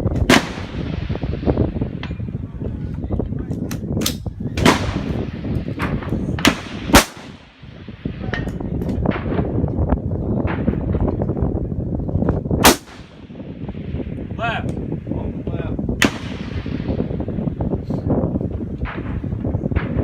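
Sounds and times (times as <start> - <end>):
low rumble: 0.0 - 20.0
rifle shots with echo: 0.2 - 2.2, 4.6 - 9.6, 12.6 - 14.2, 16.0 - 17.4.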